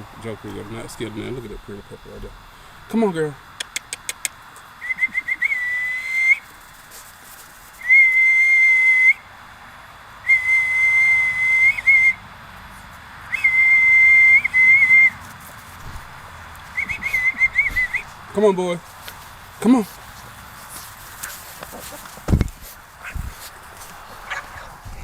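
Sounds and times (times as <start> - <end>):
person whistling: 4.8 - 6.4, 7.8 - 9.2, 10.3 - 12.2, 13.3 - 15.2, 16.8 - 18.1.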